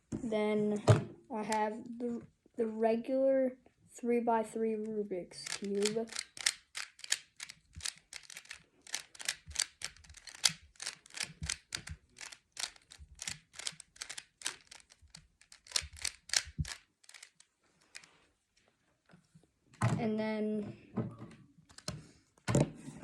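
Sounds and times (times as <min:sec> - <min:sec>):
puzzle cube layers clicking: 0:05.4 - 0:18.1.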